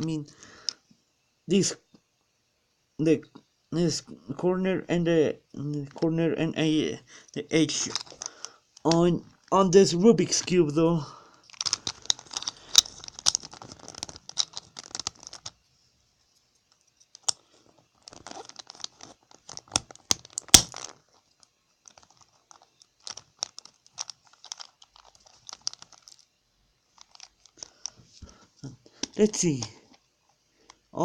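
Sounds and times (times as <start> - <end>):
plastic cube pieces clicking: 7.8 - 9.1, 11.5 - 15.6, 21.9 - 26.2.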